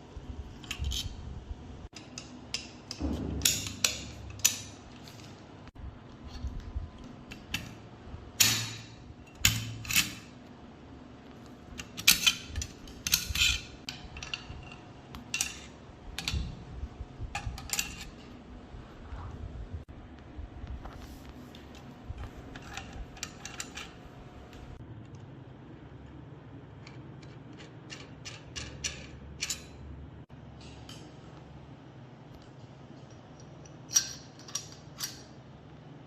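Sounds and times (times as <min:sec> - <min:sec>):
low handling noise: 0:02.9 - 0:10.3
metal gun parts clicking and clinking: 0:11.8 - 0:16.5, 0:22.5 - 0:24.0, 0:27.2 - 0:29.8, 0:33.6 - 0:35.3.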